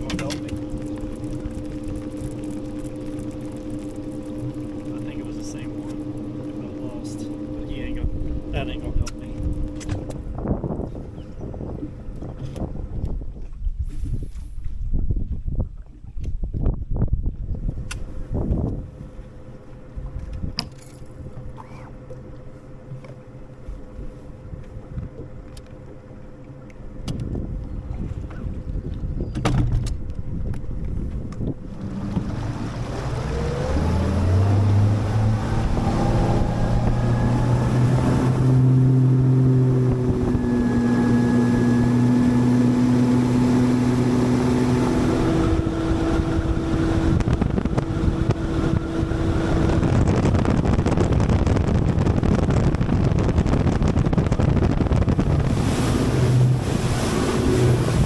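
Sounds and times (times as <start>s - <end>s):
outboard motor speeding up: 0.0s - 58.0s
wind rushing over microphone: 6.8s - 19.2s, 27.1s - 58.0s.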